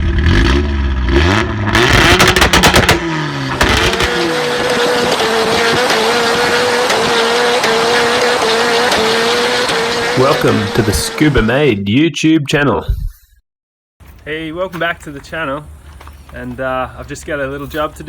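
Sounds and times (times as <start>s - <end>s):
car engine revving: 0.0s - 11.7s.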